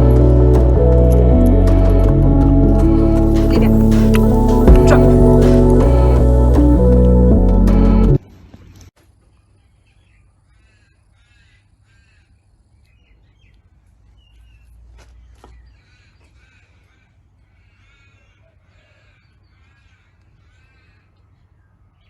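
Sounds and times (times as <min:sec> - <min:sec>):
low rumble: 0:00.0 - 0:08.2
crow cawing: 0:10.5 - 0:12.5, 0:15.8 - 0:21.2.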